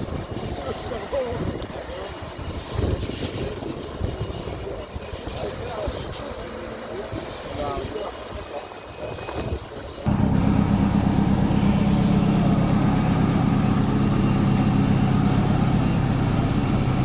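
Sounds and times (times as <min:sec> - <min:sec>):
steady engine drone: 0:10.1 - 0:17.0.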